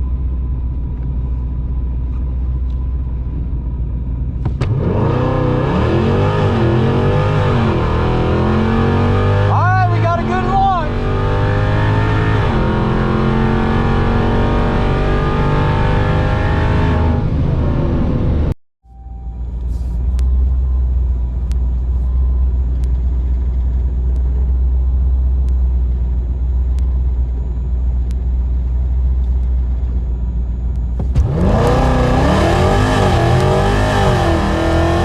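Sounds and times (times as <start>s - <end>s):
car engine revving: 3.8s - 18.6s, 30.8s - 35.0s.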